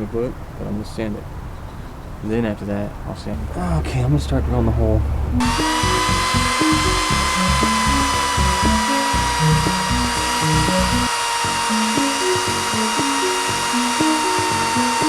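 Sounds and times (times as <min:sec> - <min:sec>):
background music: 0:05.3 - 0:15.0
electric drill whining: 0:05.4 - 0:15.0.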